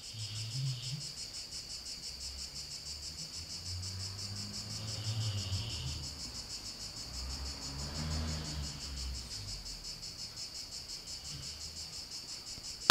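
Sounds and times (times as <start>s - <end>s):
crickets chirping: 0.0s - 12.9s.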